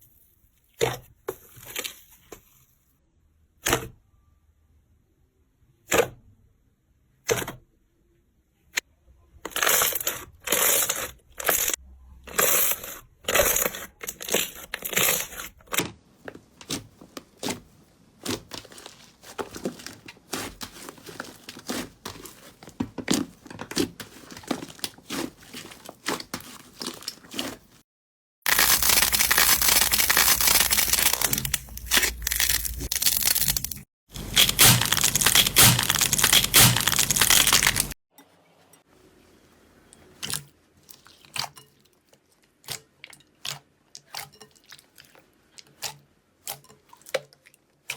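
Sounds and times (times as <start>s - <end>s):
slime crackling and popping: 28.5s - 38.0s.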